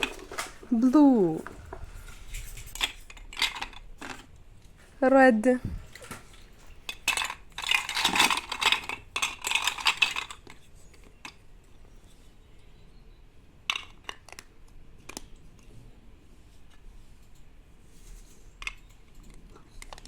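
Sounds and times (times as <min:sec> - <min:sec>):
plastic toys clattering: 0:00.0 - 0:04.8, 0:05.6 - 0:11.7, 0:13.6 - 0:15.4, 0:18.1 - 0:20.0.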